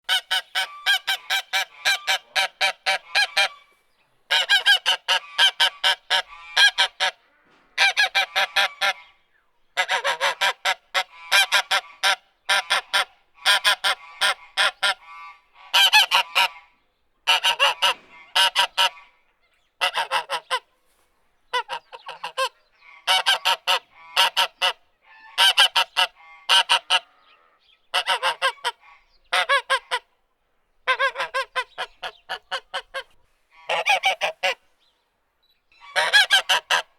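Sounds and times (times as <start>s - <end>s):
geese honking: 0.1s - 7.2s, 7.8s - 9.2s, 9.8s - 19.2s, 21.5s - 30.1s, 30.8s - 34.7s, 35.8s - 36.9s.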